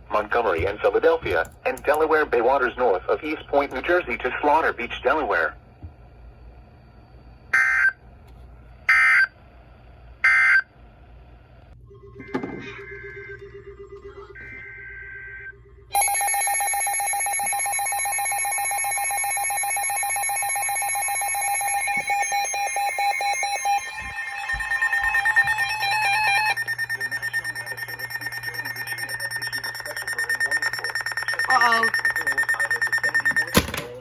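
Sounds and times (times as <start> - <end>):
loud electronic alert alarm: 7.6 - 8.0, 8.9 - 9.3, 10.2 - 10.7, 12.0 - 33.9
buzzing data bursts: 18.6 - 33.6.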